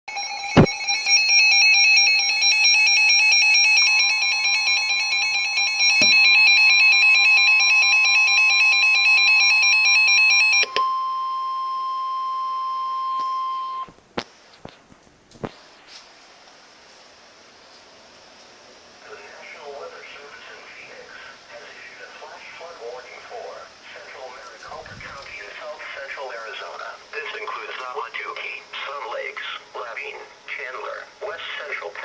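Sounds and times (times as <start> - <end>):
pulsing electronic alarm tones: 0.1 - 13.9
steady alert tone: 6.0 - 6.7.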